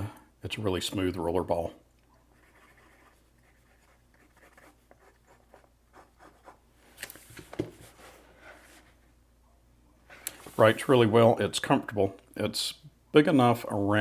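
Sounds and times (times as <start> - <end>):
pen scratching on paper: 2.2 - 6.6.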